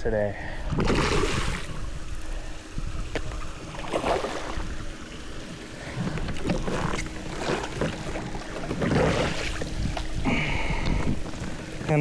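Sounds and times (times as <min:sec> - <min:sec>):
wind buffeting microphone: 0:00.6 - 0:05.1, 0:08.0 - 0:12.0
water splashing around kayak: 0:00.6 - 0:12.0.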